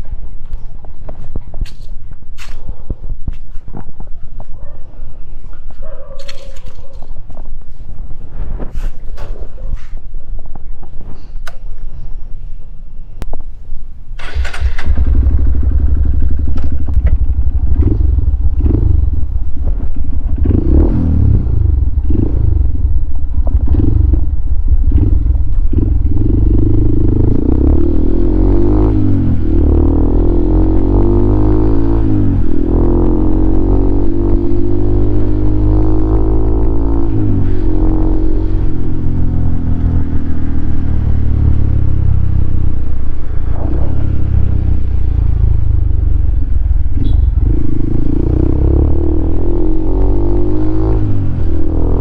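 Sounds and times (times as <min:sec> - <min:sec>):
motorcycle engine revving: 0:14.2 - 0:52.0.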